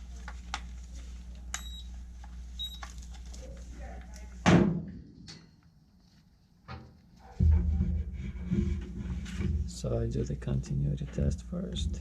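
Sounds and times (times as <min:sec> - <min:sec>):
loud knock: 0:07.4 - 0:09.7
low hum: 0:07.4 - 0:12.0.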